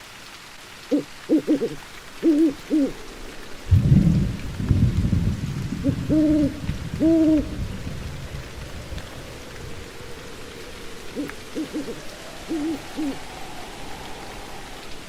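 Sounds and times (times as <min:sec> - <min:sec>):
rain: 0:00.0 - 0:15.0
owl hooting: 0:00.9 - 0:03.1, 0:05.8 - 0:07.6, 0:09.0 - 0:15.0
thunder rumbling: 0:03.4 - 0:15.0.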